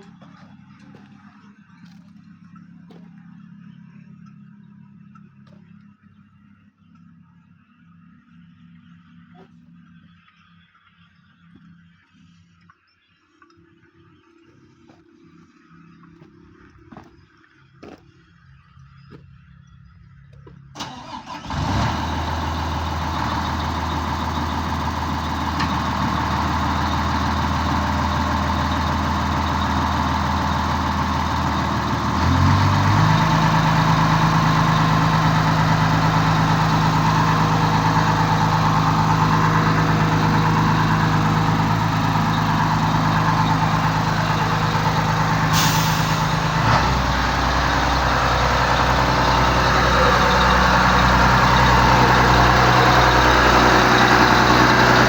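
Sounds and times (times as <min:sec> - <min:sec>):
crane engine running: 0:20.8 - 0:55.0
short air hiss: 0:45.5 - 0:46.2.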